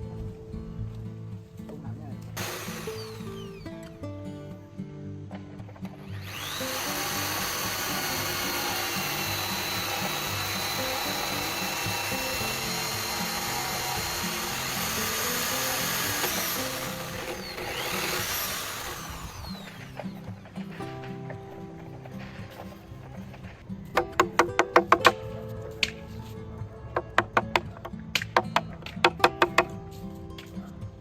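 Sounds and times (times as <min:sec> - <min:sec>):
background music: 0:00.0 - 0:31.0
power tool whine: 0:02.4 - 0:04.0, 0:06.0 - 0:20.8.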